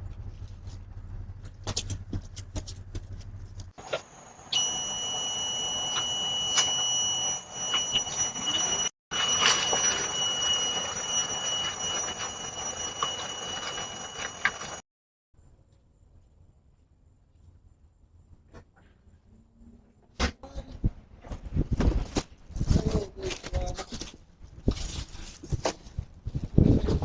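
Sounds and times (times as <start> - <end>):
high-pitched alarm tone: 4.4 - 14.8.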